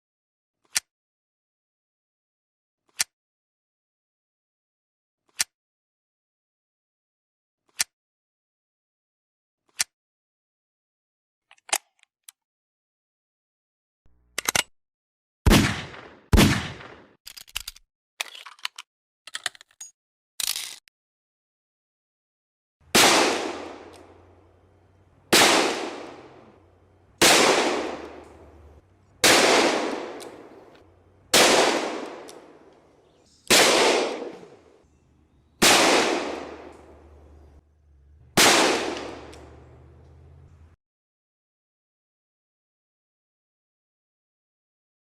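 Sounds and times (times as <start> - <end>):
handgun shots echoing: 15.5 - 17.1, 22.9 - 26.6, 27.2 - 34.7, 35.6 - 37.6, 38.4 - 39.9.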